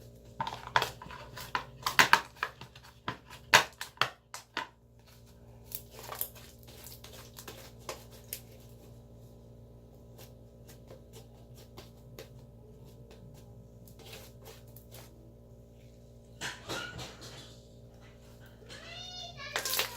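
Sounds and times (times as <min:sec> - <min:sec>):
slime squelching: 0:00.0 - 0:09.1
steady low hum: 0:00.0 - 0:19.4.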